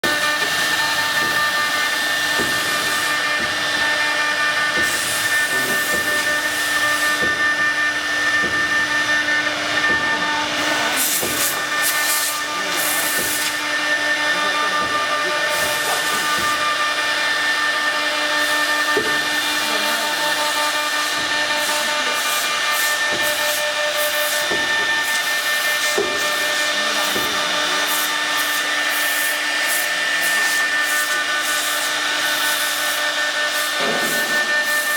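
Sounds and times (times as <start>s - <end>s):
router machine whine: 0.0s - 34.9s.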